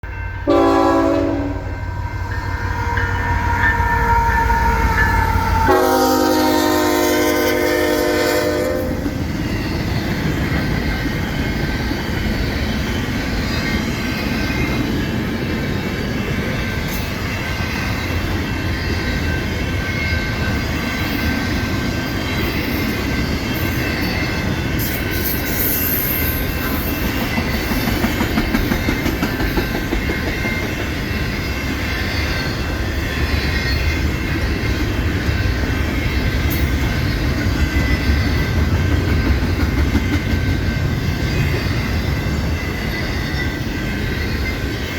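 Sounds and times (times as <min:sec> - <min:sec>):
train cars rumbling and clattering: 0:00.0 - 0:44.9
locomotive horn blasts: 0:00.4 - 0:09.0.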